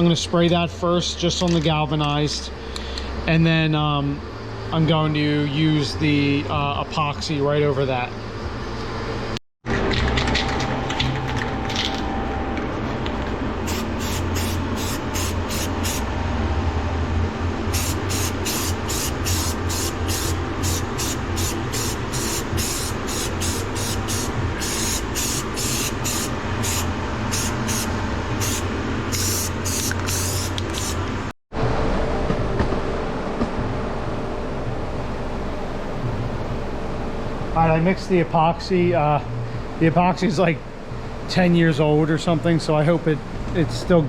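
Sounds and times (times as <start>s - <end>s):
low hum: 8.1s - 30.0s
spray hissing in bursts: 13.7s - 16.1s, 17.7s - 31.0s.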